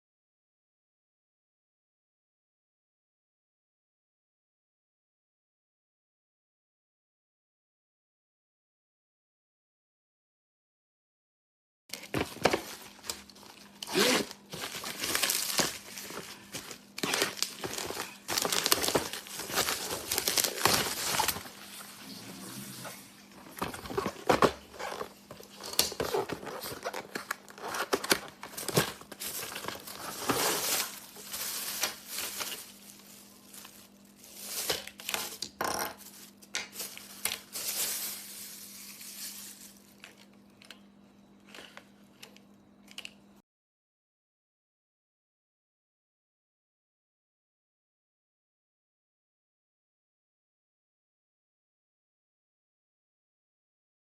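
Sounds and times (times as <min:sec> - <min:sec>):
packaging crinkling and rustling: 0:11.9 - 0:40.8.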